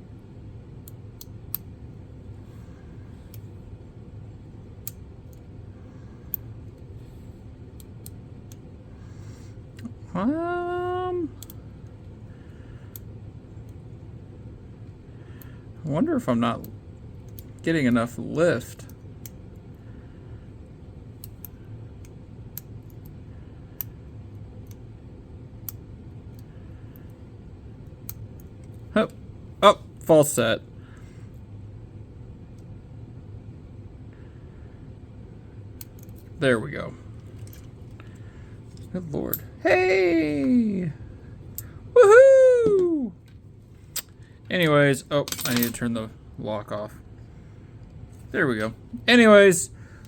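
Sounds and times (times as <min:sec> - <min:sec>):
low steady hum: 0:00.0 - 0:50.0
man's drawn-out voiced sound: 0:09.8 - 0:11.4, 0:39.0 - 0:41.0, 0:42.0 - 0:43.2.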